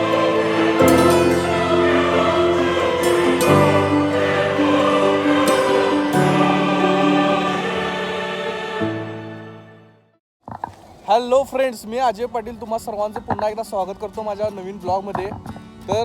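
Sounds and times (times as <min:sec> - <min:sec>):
choir singing sustained chords: 0:00.0 - 0:10.2.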